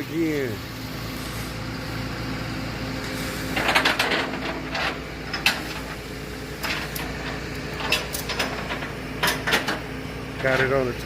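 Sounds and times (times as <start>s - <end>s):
steady low hum: 0.0s - 11.0s
mechanical clattering and clicks: 6.6s - 9.8s.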